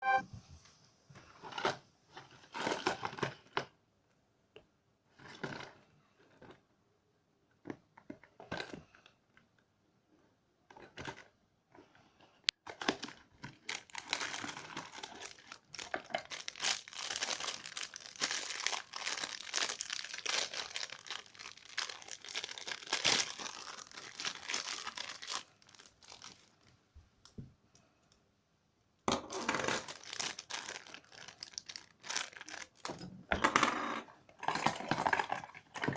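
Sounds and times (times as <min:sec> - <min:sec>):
packaging crinkling and tearing: 0:12.6 - 0:26.7, 0:29.2 - 0:33.1.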